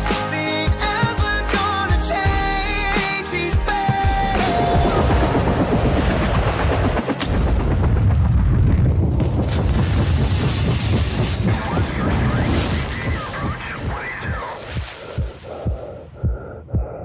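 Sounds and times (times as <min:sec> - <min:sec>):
wind buffeting microphone: 0:04.7 - 0:16.5.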